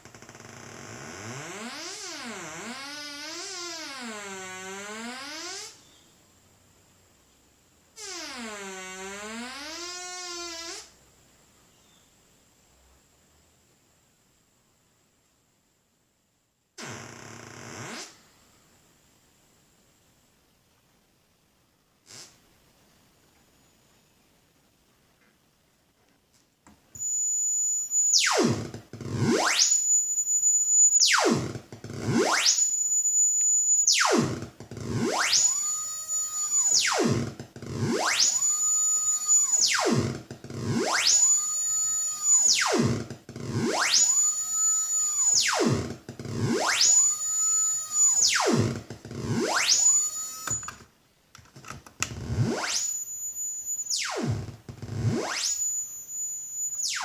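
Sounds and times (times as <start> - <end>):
synthesizer oscillator pitch sweeps: 27.0 - 50.6, 52.3 - 57.0.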